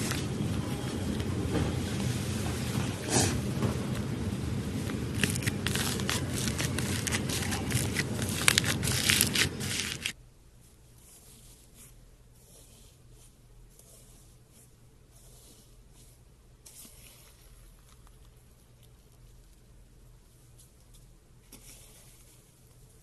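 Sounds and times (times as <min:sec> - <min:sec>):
slime crackling and popping: 0:05.1 - 0:10.2.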